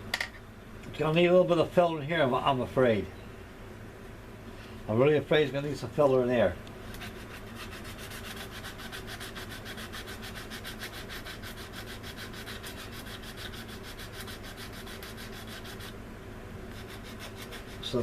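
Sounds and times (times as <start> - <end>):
sanding stick rubbing on plastic: 6.9 - 16.0, 16.7 - 18.0.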